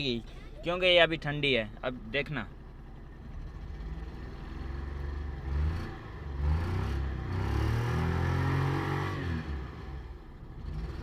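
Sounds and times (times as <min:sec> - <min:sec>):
person talking: 0:00.0 - 0:02.5
car engine revving: 0:03.2 - 0:11.0.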